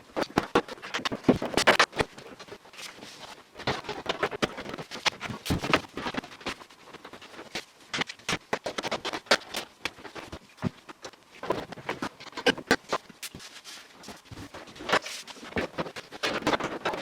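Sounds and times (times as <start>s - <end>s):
rapid clicks knocks and scrapes: 0.1s - 17.0s.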